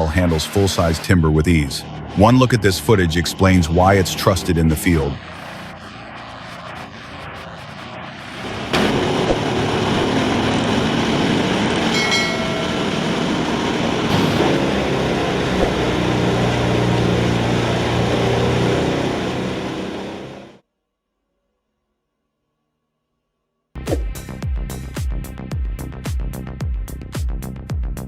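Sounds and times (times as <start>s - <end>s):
engine drone: 0.0s - 20.6s
wood chipper chipping timber: 8.5s - 20.6s.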